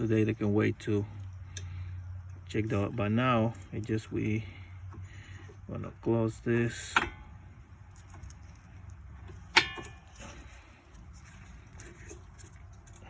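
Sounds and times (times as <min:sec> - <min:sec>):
metal clank with ring: 0:09.5 - 0:10.2.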